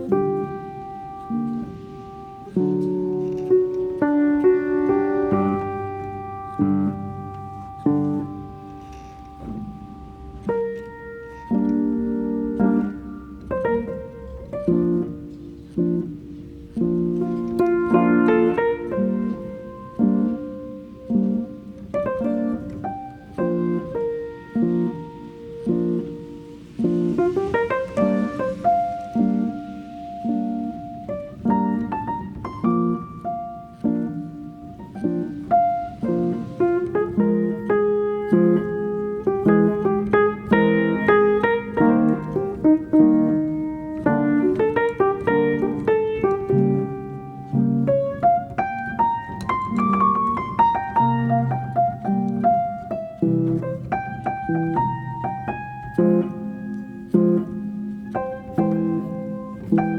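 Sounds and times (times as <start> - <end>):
piano playing chords and melody: 0.0 - 59.9.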